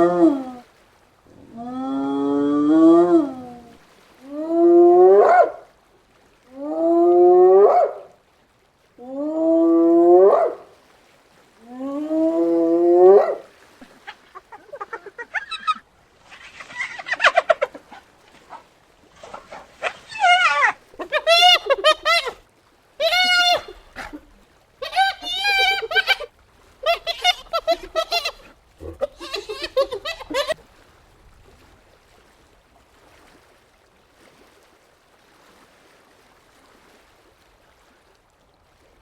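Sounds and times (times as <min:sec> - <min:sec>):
hyena whooping calls: 0:12.8 - 0:22.4, 0:23.0 - 0:24.2, 0:24.8 - 0:30.6.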